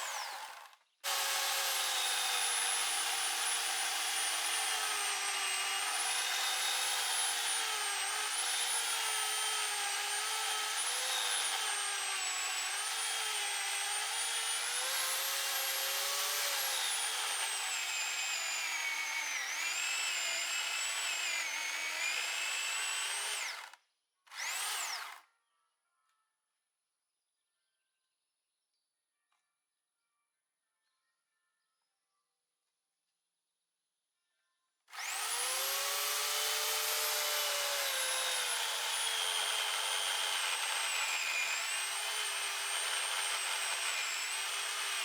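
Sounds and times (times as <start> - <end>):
power tool motor whining: 0.0 - 25.2, 34.9 - 45.0.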